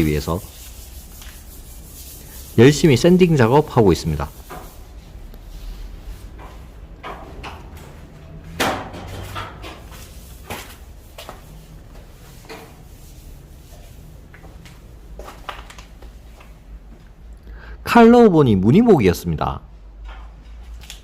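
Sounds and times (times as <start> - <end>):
knocks and clatter of renovation: 6.2 - 16.5, 19.9 - 21.0.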